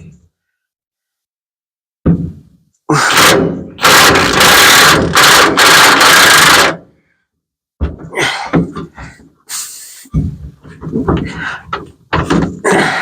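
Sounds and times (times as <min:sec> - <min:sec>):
powered wrench bursts: 0:02.9 - 0:06.9.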